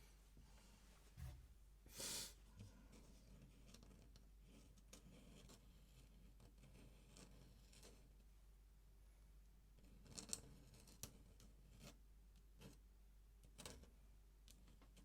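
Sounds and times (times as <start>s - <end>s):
pen scratching on paper: 2.9s - 8.1s.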